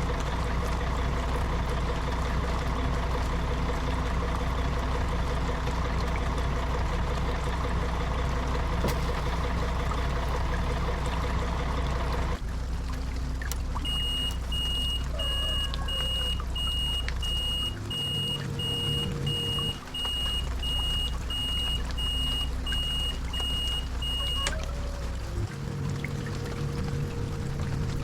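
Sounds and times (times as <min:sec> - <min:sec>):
bus engine rumbling: 0:00.0 - 0:28.0
repeated electronic beep: 0:13.9 - 0:24.5.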